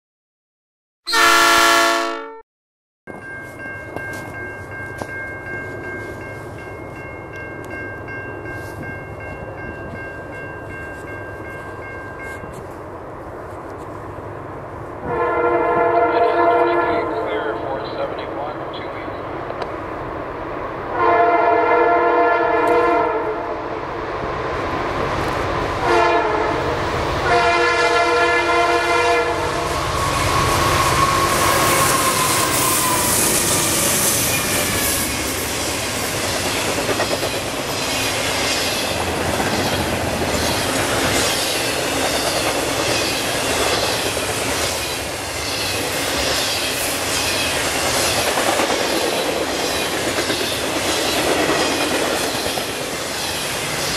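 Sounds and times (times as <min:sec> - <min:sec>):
locomotive horn blasts: 0:01.1 - 0:02.4, 0:15.0 - 0:17.6, 0:21.0 - 0:23.6, 0:25.8 - 0:30.1.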